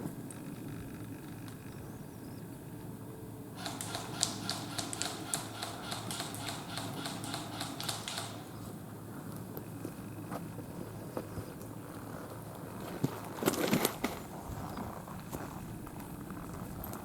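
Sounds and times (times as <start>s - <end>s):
rapid sharp mechanical clicks: 3.6s - 8.6s.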